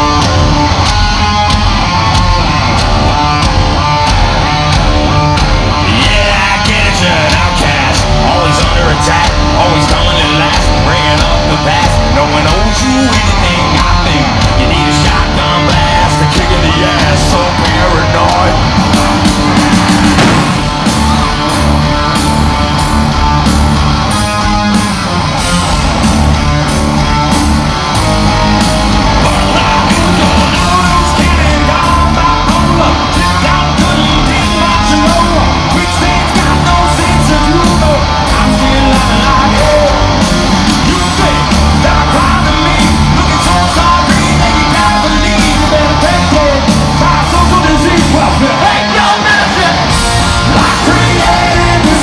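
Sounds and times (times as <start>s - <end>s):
bass guitar: 0.0s - 52.0s
distorted electric guitars: 0.0s - 52.0s
drums beating: 0.0s - 52.0s
person singing: 5.6s - 19.2s, 29.1s - 52.0s.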